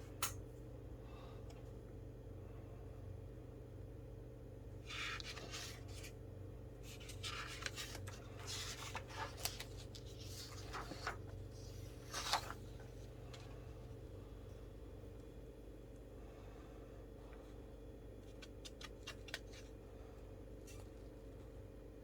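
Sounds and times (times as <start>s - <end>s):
low electrical hum: 0.0s - 22.0s.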